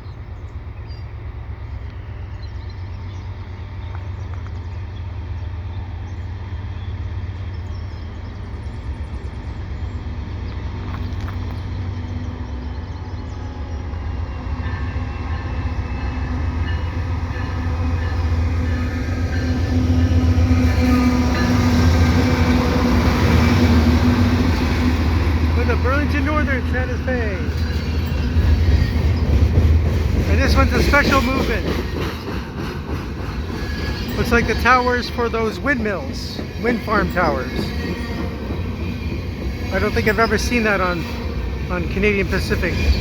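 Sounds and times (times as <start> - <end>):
diesel locomotive engines droning: 0.0 - 43.0
higher steady tones: 14.4 - 31.9.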